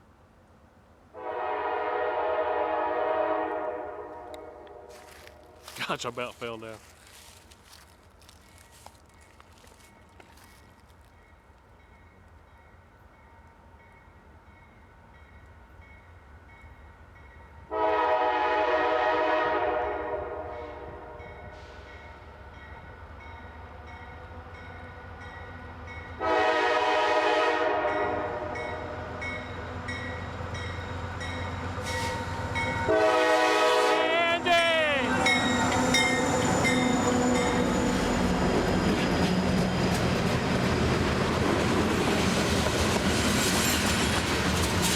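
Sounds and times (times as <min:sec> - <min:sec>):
locomotive air horn blasts: 0:01.2 - 0:05.8, 0:17.7 - 0:21.7, 0:26.2 - 0:28.6, 0:32.8 - 0:35.8
train wheels rumbling and clattering: 0:35.1 - 0:44.9.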